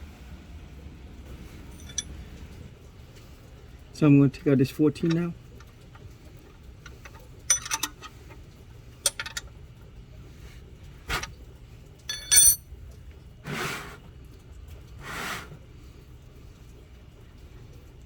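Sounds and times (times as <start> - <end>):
metal hand tools clinking: 1.8 - 2.0, 7.5 - 8.1, 12.1 - 12.6.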